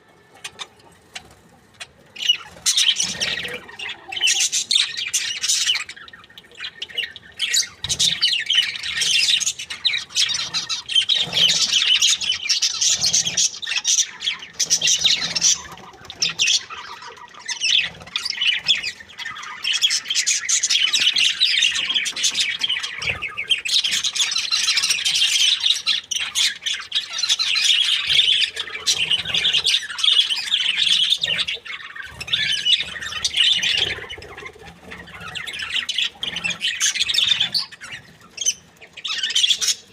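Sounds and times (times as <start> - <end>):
budgerigars chirping and warbling: 0.2 - 39.9.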